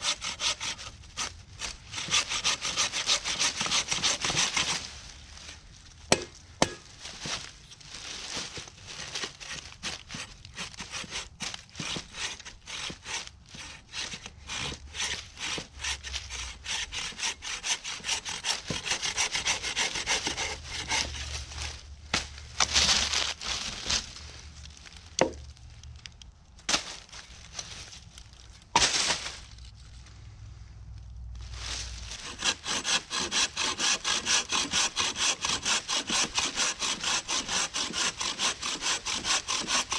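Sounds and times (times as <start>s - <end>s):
hand saw cutting wood: 0.0s - 4.9s, 6.1s - 7.4s, 9.0s - 21.6s, 32.1s - 39.9s.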